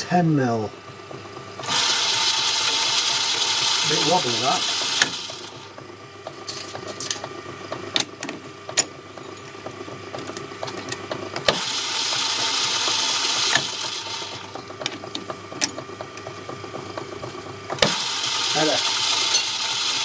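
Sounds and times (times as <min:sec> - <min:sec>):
lathe motor hum: 0:00.6 - 0:06.4, 0:07.4 - 0:20.0
lathe hissing cut: 0:01.6 - 0:05.7.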